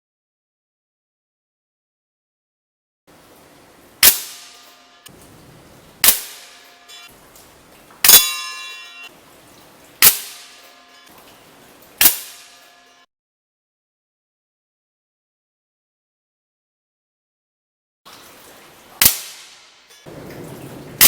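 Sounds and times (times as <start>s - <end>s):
air rifle shots: 4.0s - 4.6s, 6.0s - 6.6s
metallic ringing: 6.0s - 7.2s, 8.0s - 9.2s, 10.0s - 11.2s, 12.0s - 13.1s.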